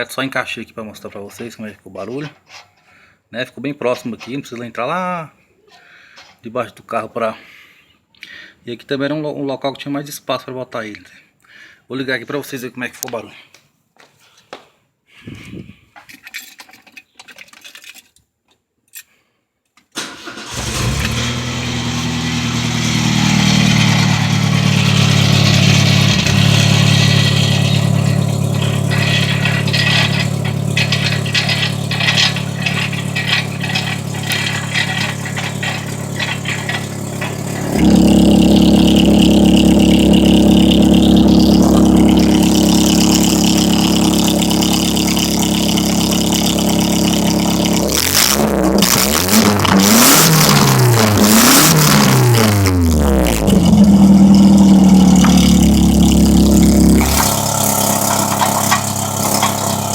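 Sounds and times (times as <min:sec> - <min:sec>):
car engine rumbling: 0:20.0 - 0:59.9.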